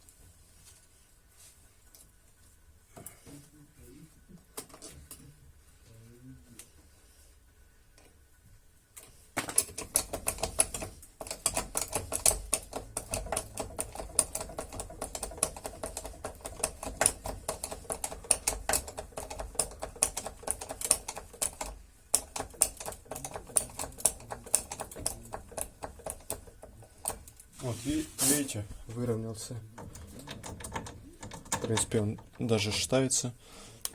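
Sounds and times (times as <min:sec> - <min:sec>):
rapid metallic clicking of tools: 0:09.4 - 0:27.4.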